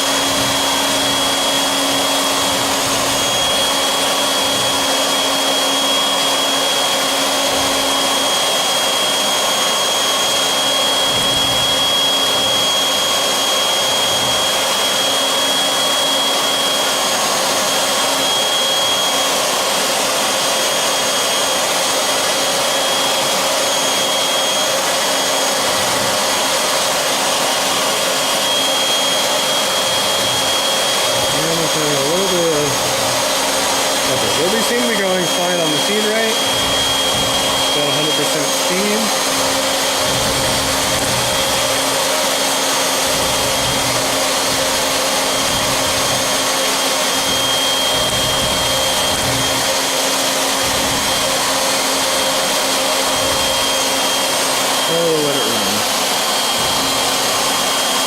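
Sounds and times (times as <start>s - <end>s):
router spindle whining: 0.0s - 58.0s.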